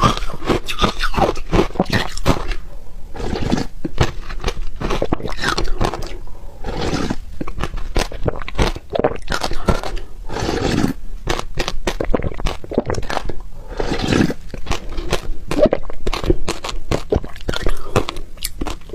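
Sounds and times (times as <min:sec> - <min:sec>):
ice crunching while chewed: 0:03.2 - 0:18.9.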